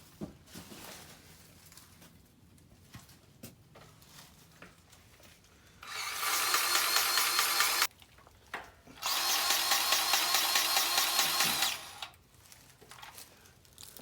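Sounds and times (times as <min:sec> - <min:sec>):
grease gun motor whine: 0:05.8 - 0:07.9, 0:09.0 - 0:12.1.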